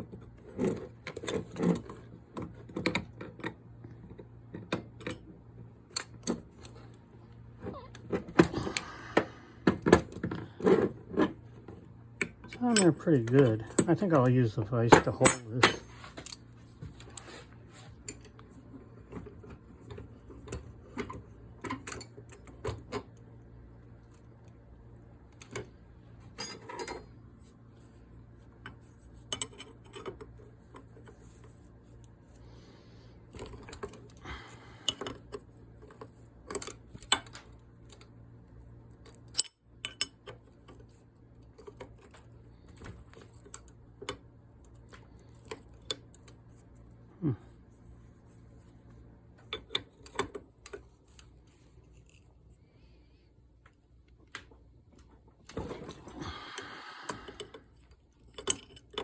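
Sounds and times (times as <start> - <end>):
faint steady hum: 0.0 - 59.0
metal tools clinking and tapping: 12.2 - 16.4, 26.3 - 27.2, 28.6 - 30.3, 39.3 - 40.3.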